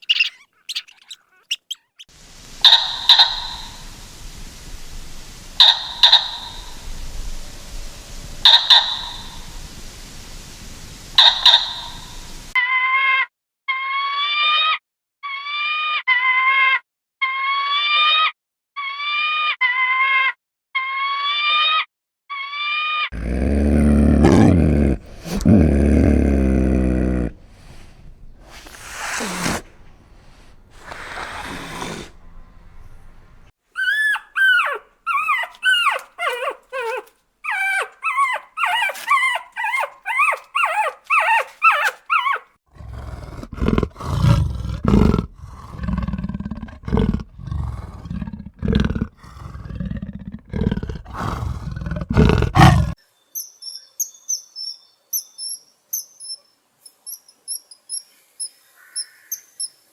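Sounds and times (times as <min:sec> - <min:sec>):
squeaky animal chirps: 0:00.0 - 0:03.8, 0:05.6 - 0:06.8, 0:08.4 - 0:09.4, 0:11.2 - 0:23.1, 0:33.8 - 0:42.5
deep rough animal growls: 0:23.2 - 0:28.6, 0:42.7 - 0:53.0.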